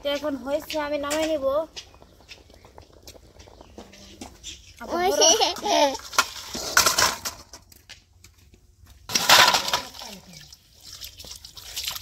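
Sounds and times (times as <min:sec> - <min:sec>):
cooking pot clattering and scraping: 0:02.0 - 0:07.7, 0:09.1 - 0:10.4.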